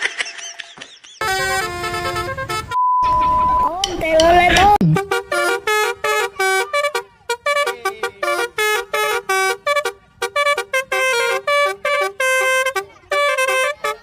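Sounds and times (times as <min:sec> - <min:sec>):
bus horn playing a melody: 0:01.2 - 0:02.8, 0:04.9 - 0:14.0.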